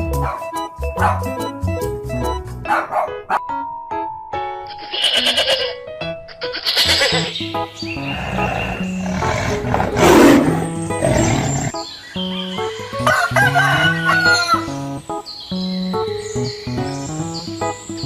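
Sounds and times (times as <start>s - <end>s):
background music: 0.0s - 18.0s
rooster crowing: 13.0s - 14.7s.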